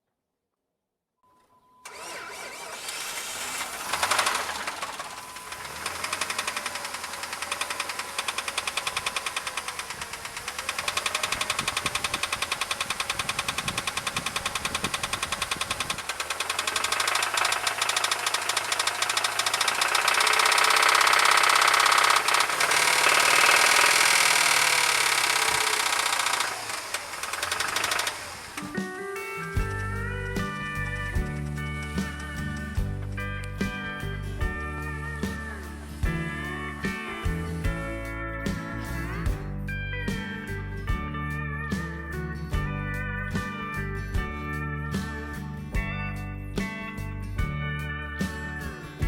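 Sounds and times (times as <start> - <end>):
car engine cranking and running: 1.8 - 49.0
engine ticking knock: 3.8 - 28.8, 29.6 - 37.9.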